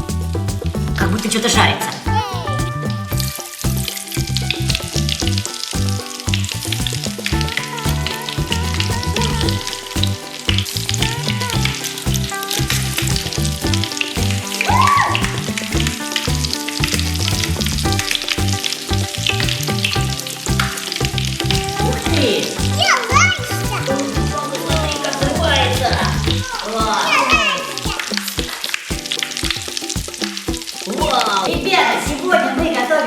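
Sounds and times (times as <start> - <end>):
background music with beat: 0.0 - 33.0.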